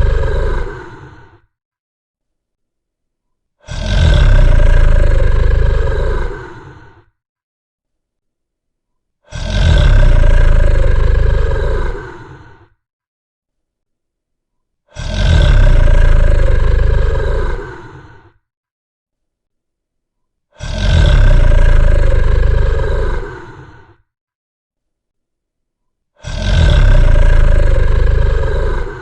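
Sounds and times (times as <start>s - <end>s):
deep rasping dragon roar: 0.0s - 1.4s, 3.6s - 7.1s, 9.3s - 12.7s, 14.9s - 18.4s, 20.6s - 24.0s, 26.2s - 29.0s.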